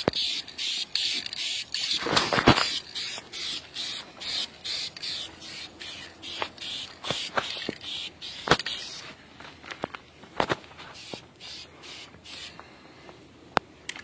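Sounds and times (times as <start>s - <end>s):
spray paint can hissing: 0.0s - 9.1s, 10.9s - 12.6s.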